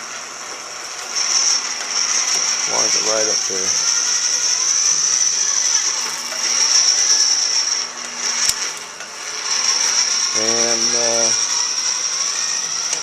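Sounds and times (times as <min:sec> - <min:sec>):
electric drill whining: 0:00.0 - 0:13.0.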